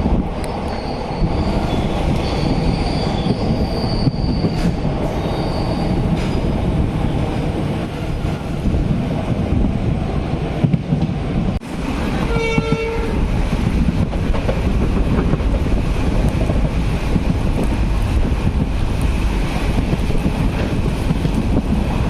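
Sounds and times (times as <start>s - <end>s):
train wheels rumbling on rails: 0.0s - 22.0s
train horn blast: 12.1s - 13.2s.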